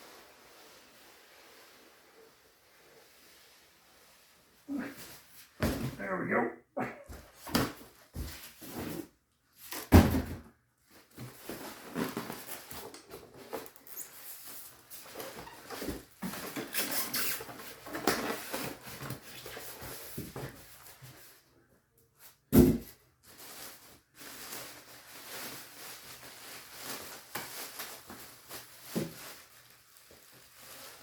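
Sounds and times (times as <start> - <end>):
cardboard rustling and scraping: 7.3 - 9.9, 10.8 - 21.4.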